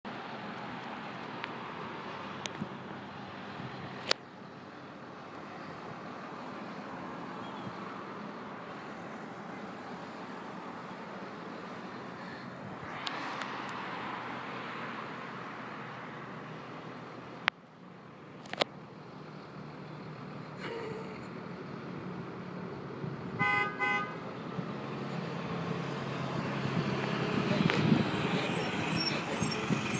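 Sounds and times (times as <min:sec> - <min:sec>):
traffic and engine rumble: 0:00.1 - 0:29.9
bus horn honking: 0:23.3 - 0:24.2.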